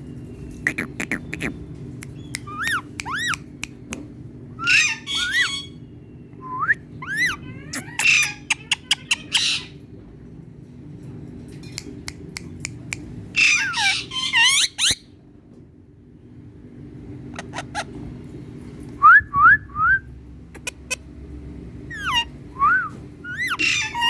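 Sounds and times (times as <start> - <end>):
steady low hum: 0.0 - 24.0
parrot whistling and squawking: 0.7 - 1.6, 2.2 - 3.4, 4.6 - 5.8, 6.6 - 9.7, 13.4 - 15.1, 17.4 - 17.9, 21.9 - 24.0
parrot clicking: 0.7 - 4.0.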